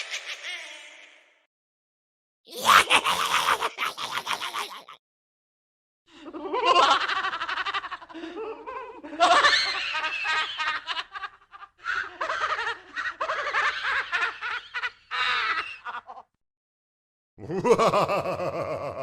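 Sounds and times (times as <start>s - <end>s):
ghostly voice laughing: 2.5s - 5.0s, 17.4s - 19.0s.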